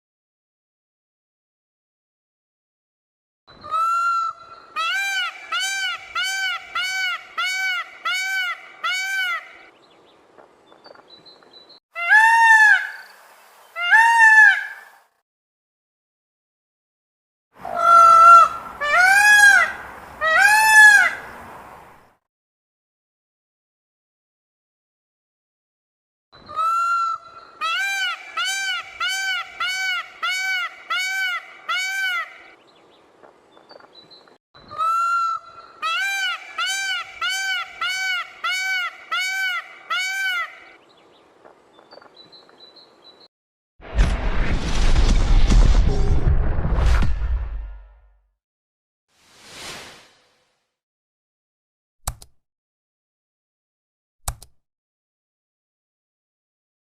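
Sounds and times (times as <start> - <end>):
peacock calling: 3.5 - 9.7, 11.9 - 15.0, 17.6 - 21.4, 26.4 - 32.7, 34.6 - 40.9.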